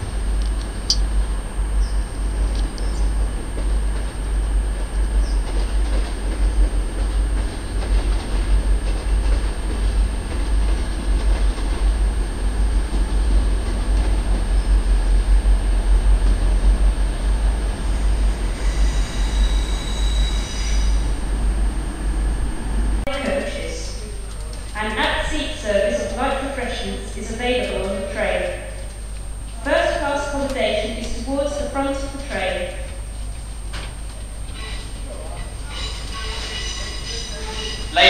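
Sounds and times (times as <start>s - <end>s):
train rumbling: 0.0s - 38.0s
wheels squealing on rails: 17.8s - 21.3s, 34.4s - 38.0s.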